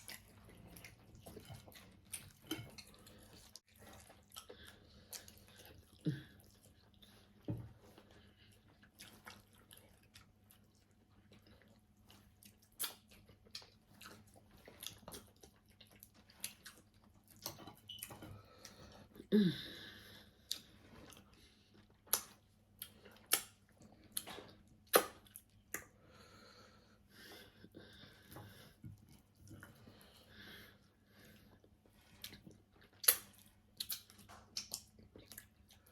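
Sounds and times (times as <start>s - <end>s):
chewing with wet mouth smacks: 0.0s - 19.2s, 20.4s - 26.0s, 28.1s - 35.9s.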